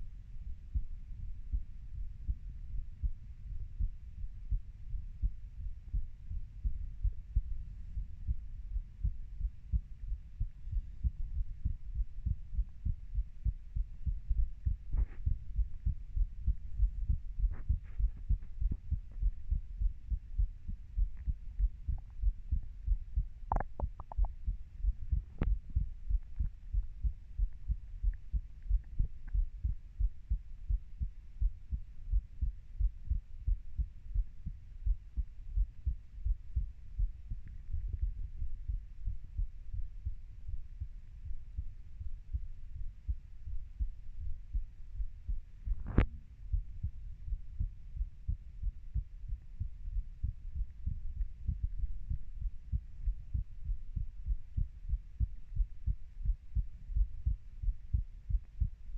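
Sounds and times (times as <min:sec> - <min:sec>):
heartbeat thuds: 0:00.0 - 0:58.9
faint clicks: 0:23.5 - 0:24.4.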